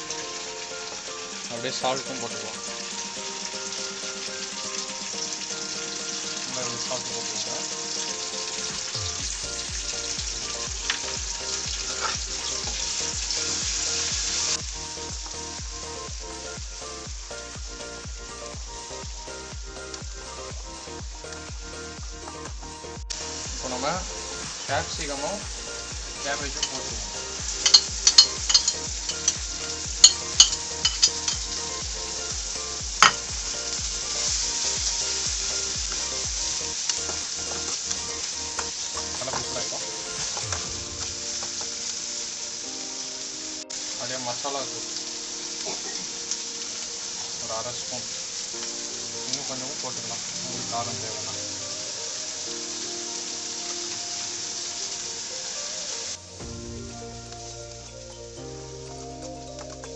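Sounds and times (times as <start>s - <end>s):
onions sizzling in hot oil: 0.0s - 59.9s
low thumping beat: 8.7s - 39.2s, 56.4s - 59.9s
spatula striking and scraping pan: 27.6s - 29.4s, 30.0s - 31.4s.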